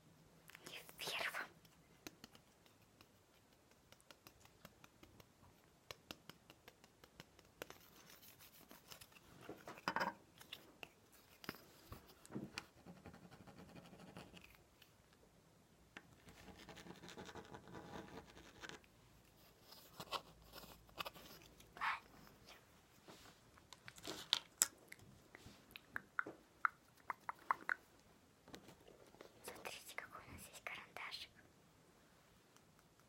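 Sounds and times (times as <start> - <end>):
rubbing and scratching: 0.6 - 15.0, 16.1 - 24.5.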